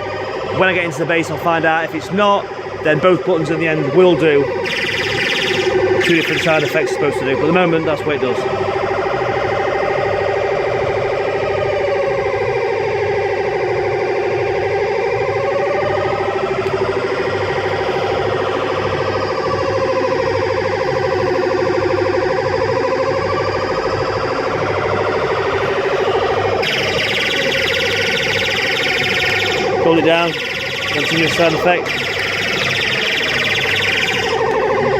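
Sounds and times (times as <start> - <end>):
electronic siren sound effect: 0.0 - 34.9
steady electronic tone: 4.5 - 7.1, 25.3 - 34.9.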